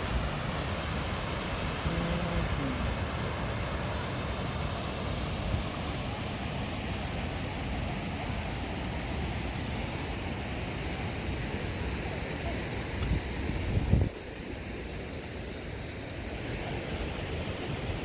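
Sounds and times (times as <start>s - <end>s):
waterfall rushing: 0.0s - 7.1s.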